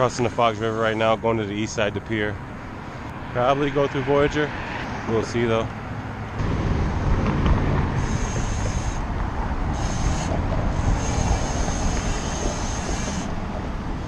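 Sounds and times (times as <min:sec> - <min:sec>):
wind rushing over microphone: 0:01.9 - 0:14.0
thin high buzz: 0:08.0 - 0:09.1, 0:09.7 - 0:13.4.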